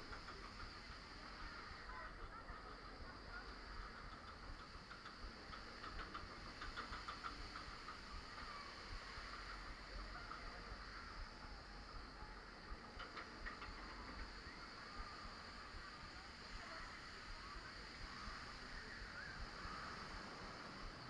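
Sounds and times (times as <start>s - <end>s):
fast mechanical clicking: 0.0s - 11.3s, 11.9s - 16.1s
roller coaster rumbling on track: 0.0s - 21.0s.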